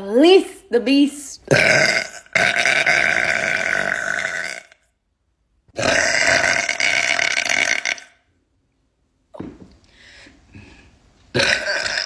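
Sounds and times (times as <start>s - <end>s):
woman belching: 1.5s - 4.8s, 5.8s - 8.2s, 11.3s - 12.0s.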